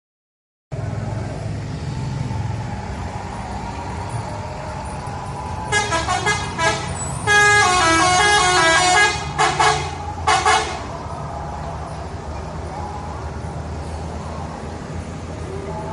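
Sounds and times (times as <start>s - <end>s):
bus engine: 0.7s - 15.9s
traffic noise: 0.7s - 15.9s
multi-tone musical bus horn: 5.6s - 11.0s.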